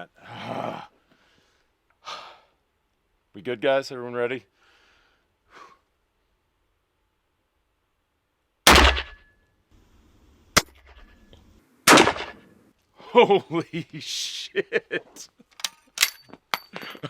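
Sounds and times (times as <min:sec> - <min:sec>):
loud echoing rifle blasts: 0:08.7 - 0:09.3, 0:11.9 - 0:12.4
sharp crack: 0:08.7 - 0:09.3, 0:10.6 - 0:11.2, 0:11.9 - 0:12.6.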